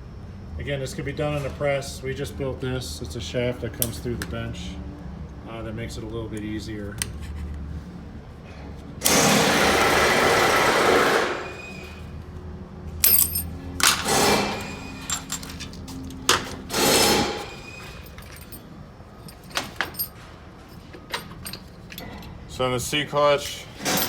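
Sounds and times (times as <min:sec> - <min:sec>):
power tool running: 0:09.0 - 0:11.6
metal clicks and clinks: 0:13.0 - 0:16.2, 0:18.1 - 0:22.4.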